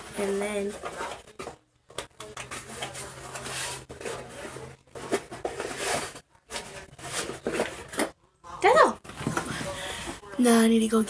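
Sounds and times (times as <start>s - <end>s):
rustling and clicking of packaging: 0.0s - 8.2s.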